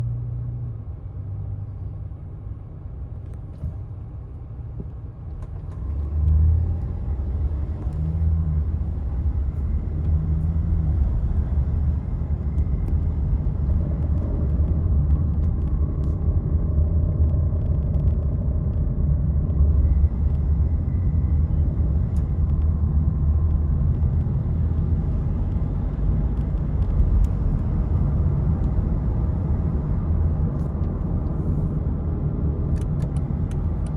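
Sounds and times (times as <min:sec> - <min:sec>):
car engine running: 0:07.0 - 0:33.9.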